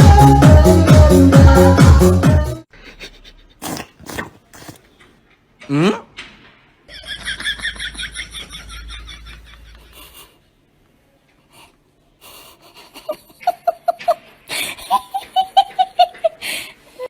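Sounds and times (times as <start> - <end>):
person laughing wheezily: 2.7 - 4.8.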